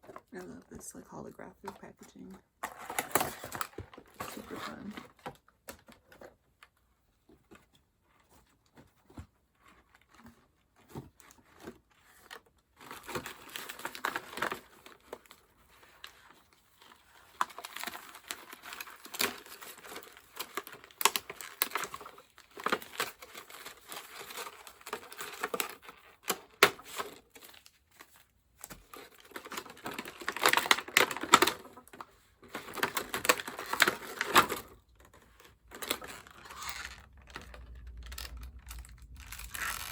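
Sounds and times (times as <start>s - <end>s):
plastic and foil packaging crinkling: 0.0s - 39.9s.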